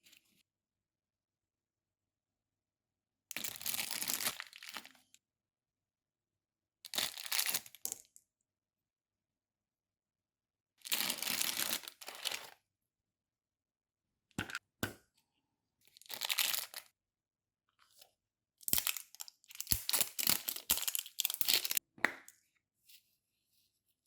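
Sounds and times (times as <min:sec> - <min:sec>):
packaging tearing and crinkling: 0:18.8 - 0:21.8.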